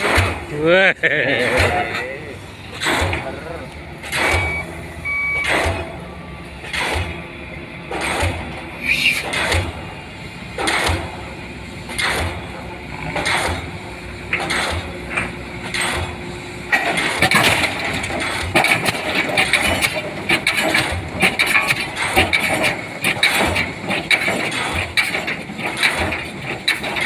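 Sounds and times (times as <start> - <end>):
pile hammer striking: 2.8 - 3.4, 4.0 - 4.6, 5.4 - 6.0, 10.6 - 11.2.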